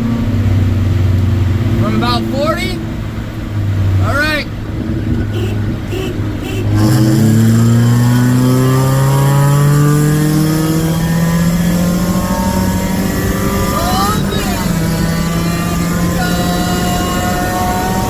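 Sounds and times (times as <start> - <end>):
car engine accelerating: 0.0 - 18.0.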